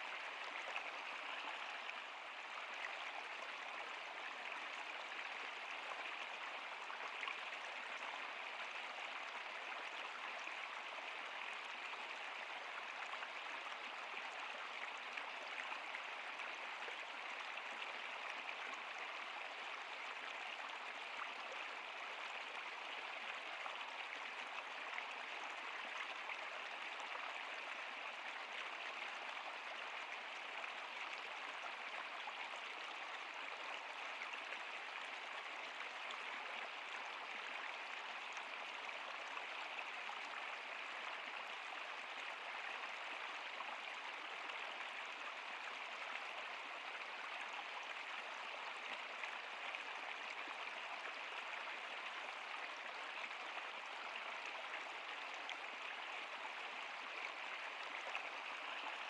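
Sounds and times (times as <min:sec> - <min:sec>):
stream water flowing: 0:00.0 - 0:59.0.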